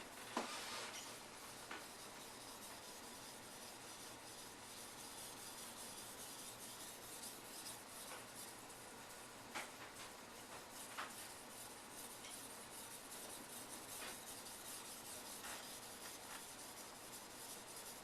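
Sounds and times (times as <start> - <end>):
knife scraping on wet whetstone: 10.5 - 18.0.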